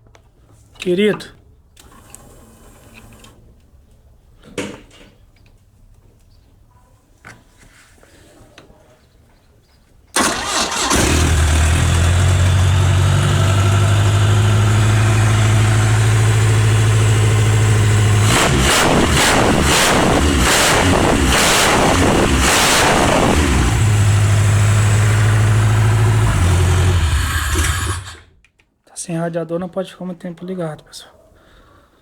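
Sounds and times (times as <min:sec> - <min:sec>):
car engine starting and idling: 0:10.2 - 0:28.4
engine revving: 0:10.2 - 0:28.4.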